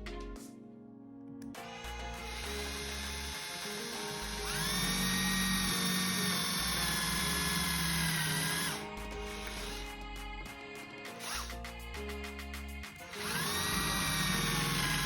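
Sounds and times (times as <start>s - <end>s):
background music: 0.0s - 15.0s
power drill whining: 1.6s - 10.0s, 11.2s - 11.5s, 13.1s - 15.0s.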